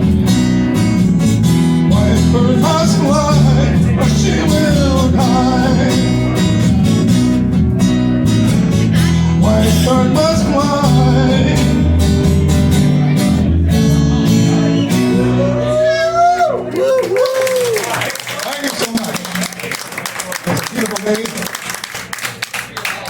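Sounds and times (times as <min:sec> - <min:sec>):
guitar strumming: 0:00.0 - 0:16.7
electric bass line: 0:00.0 - 0:16.8.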